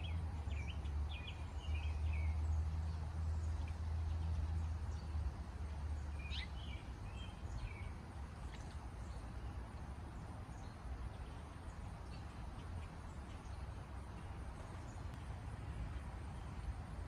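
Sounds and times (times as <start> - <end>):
low steady hum: 0.0 - 17.0
small bird chirping: 5.9 - 16.8.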